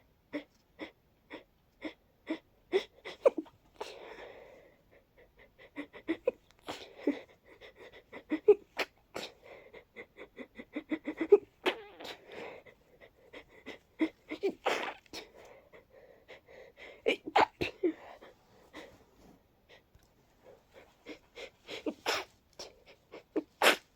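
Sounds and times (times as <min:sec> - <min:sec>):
person sneezing: 0:14.3 - 0:15.3, 0:17.1 - 0:18.1, 0:21.7 - 0:23.9.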